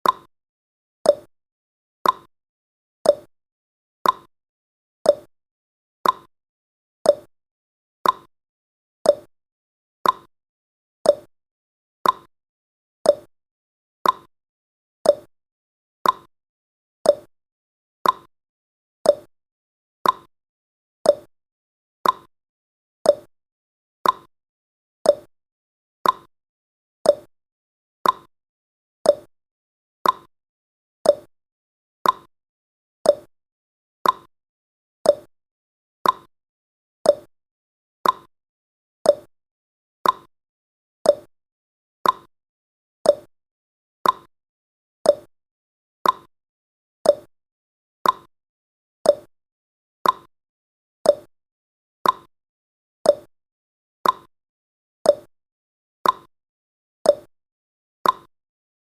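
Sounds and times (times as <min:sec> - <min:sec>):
timer ticking: 0:00.0 - 0:00.3, 0:01.1 - 0:01.3, 0:02.0 - 0:02.3, 0:03.1 - 0:03.3, 0:04.0 - 0:04.3, 0:05.1 - 0:05.3, 0:06.0 - 0:06.3, 0:07.1 - 0:07.3, 0:08.0 - 0:08.3, 0:09.1 - 0:09.3, 0:10.0 - 0:10.3, 0:11.1 - 0:11.3, 0:12.0 - 0:12.3, 0:13.1 - 0:13.3, 0:14.0 - 0:14.3, 0:15.1 - 0:15.3, 0:16.0 - 0:16.3, 0:17.1 - 0:17.3, 0:18.0 - 0:18.3, 0:19.1 - 0:19.3, 0:20.0 - 0:20.3, 0:21.1 - 0:21.3, 0:22.0 - 0:22.3, 0:23.1 - 0:23.3, 0:24.0 - 0:24.3, 0:25.1 - 0:25.3, 0:26.0 - 0:26.3, 0:27.1 - 0:27.3, 0:28.0 - 0:28.3, 0:29.1 - 0:29.3, 0:30.0 - 0:30.3, 0:31.0 - 0:31.3, 0:32.0 - 0:32.3, 0:33.1 - 0:33.3, 0:34.0 - 0:34.3, 0:35.1 - 0:35.3, 0:36.0 - 0:36.3, 0:37.1 - 0:37.3, 0:38.0 - 0:38.3, 0:39.1 - 0:39.3, 0:40.0 - 0:40.3, 0:41.1 - 0:41.3, 0:42.0 - 0:42.3, 0:43.1 - 0:43.3, 0:44.0 - 0:44.3, 0:45.1 - 0:45.3, 0:46.0 - 0:46.3, 0:47.1 - 0:47.3, 0:48.0 - 0:48.3, 0:49.1 - 0:49.3, 0:50.0 - 0:50.3, 0:51.1 - 0:51.3, 0:52.0 - 0:52.3, 0:53.1 - 0:53.3, 0:54.0 - 0:54.3, 0:55.1 - 0:55.3, 0:56.0 - 0:56.3, 0:57.1 - 0:57.3, 0:58.0 - 0:58.3.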